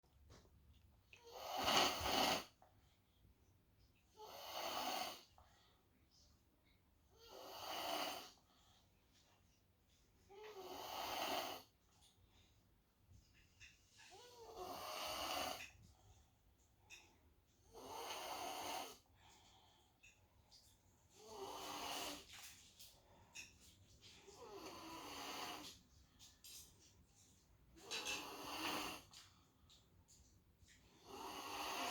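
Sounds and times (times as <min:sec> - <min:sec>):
girl snoring loudly: 0:01.2 - 0:02.5, 0:04.2 - 0:05.2, 0:07.2 - 0:08.4, 0:10.4 - 0:11.7, 0:14.2 - 0:15.7, 0:17.8 - 0:19.0, 0:21.2 - 0:22.2, 0:24.4 - 0:25.6, 0:28.0 - 0:29.1, 0:31.0 - 0:31.9.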